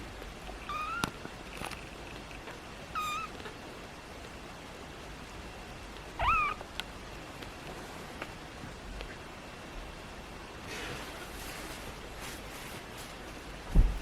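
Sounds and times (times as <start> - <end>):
kitten squeaky hiccup peeps: 0.6 - 1.1, 3.0 - 3.4, 6.2 - 6.6.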